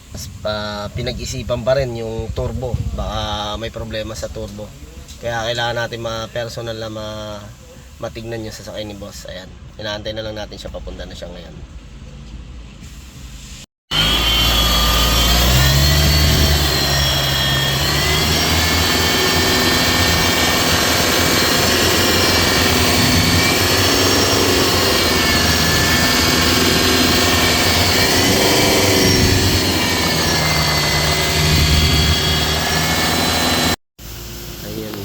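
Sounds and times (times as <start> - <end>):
engine humming drone: 13.9 - 35.0
whining tones: 13.9 - 35.0.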